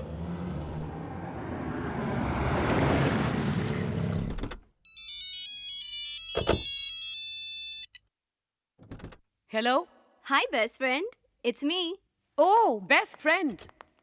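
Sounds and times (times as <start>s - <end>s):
car engine and road noise: 0.0s - 4.8s
phone ringtone beeping melody: 4.8s - 8.0s.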